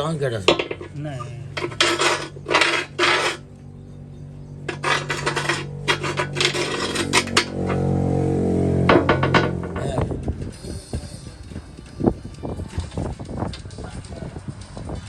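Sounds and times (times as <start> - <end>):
metal tools clinking and scraping: 0.0 - 8.0, 8.9 - 11.7.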